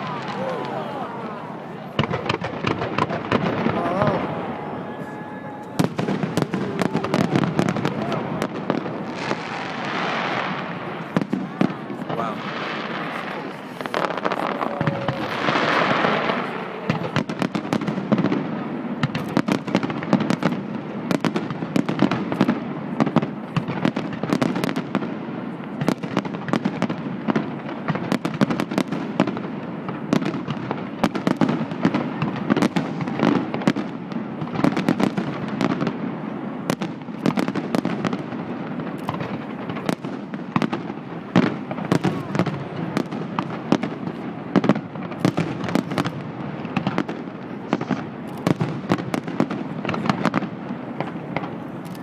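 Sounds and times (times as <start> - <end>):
fireworks hissing: 0.0 - 17.3
fireworks crackling and popping: 0.0 - 52.0.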